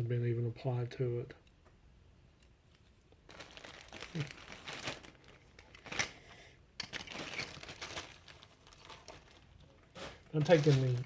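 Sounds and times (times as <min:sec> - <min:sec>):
paper crinkling and rustling: 0:02.7 - 0:11.0.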